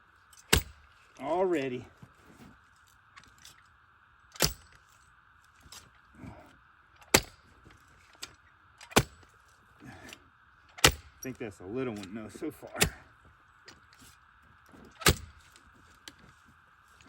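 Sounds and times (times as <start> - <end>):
digger blades striking soil: 0.4 - 1.4, 4.3 - 4.8, 7.0 - 7.4, 8.2 - 10.1, 10.7 - 13.1, 14.8 - 16.1.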